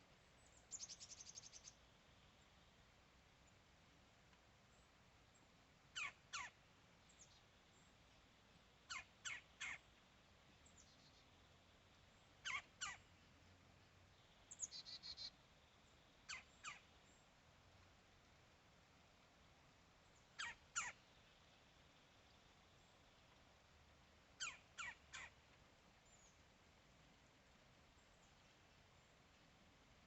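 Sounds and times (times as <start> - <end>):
bird calling: 6.0 - 6.6, 8.9 - 9.8, 12.4 - 13.0, 16.3 - 16.9, 20.4 - 21.0, 24.4 - 25.4.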